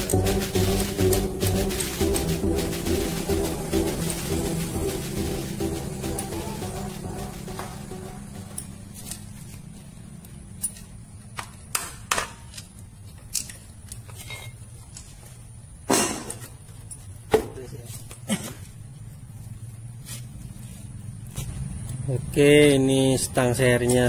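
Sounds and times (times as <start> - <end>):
steady low hum: 0.0 - 11.8
metal parts and tools clicking: 10.2 - 15.2.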